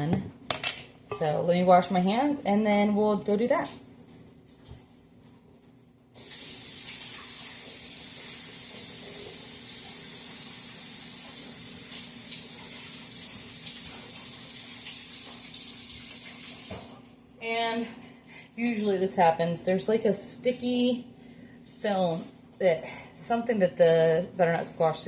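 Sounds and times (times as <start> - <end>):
water running into sink: 6.2 - 17.0.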